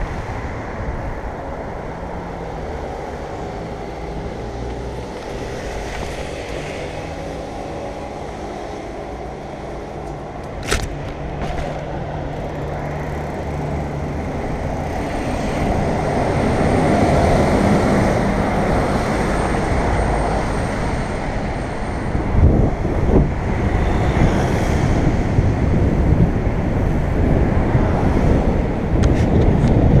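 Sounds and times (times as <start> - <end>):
rushing wind: 0.0 - 30.0
bike tyres rolling: 2.7 - 16.5
bike knocking over bumps: 10.5 - 12.0.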